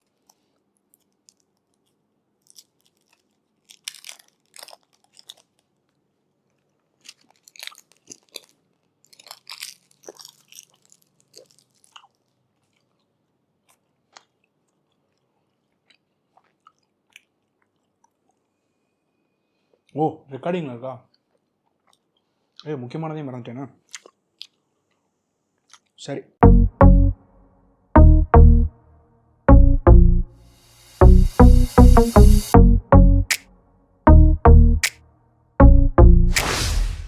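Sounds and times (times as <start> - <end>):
rustling of things handled: 0.0 - 16.9.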